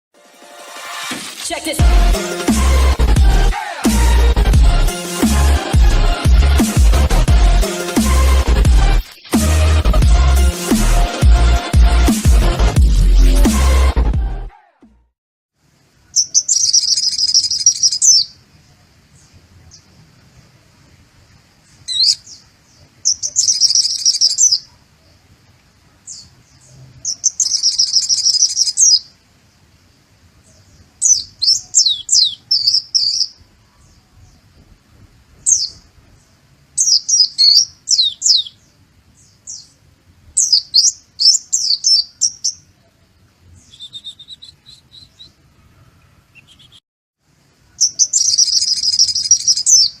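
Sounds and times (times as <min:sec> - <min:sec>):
bird singing high-pitched song: 0:16.1 - 0:18.4, 0:21.8 - 0:24.8, 0:26.0 - 0:29.1, 0:30.4 - 0:34.5, 0:35.4 - 0:35.8, 0:36.8 - 0:39.8, 0:40.4 - 0:42.9, 0:43.5 - 0:46.8, 0:47.7 - 0:50.0.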